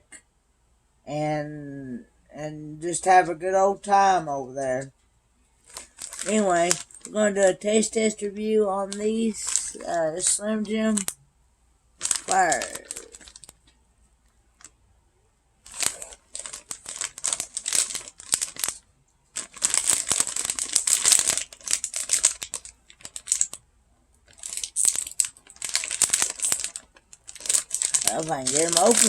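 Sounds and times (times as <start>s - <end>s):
plastic snack bag crinkling: 5.6s - 11.2s, 12.0s - 13.7s, 15.7s - 23.6s, 24.2s - 29.0s.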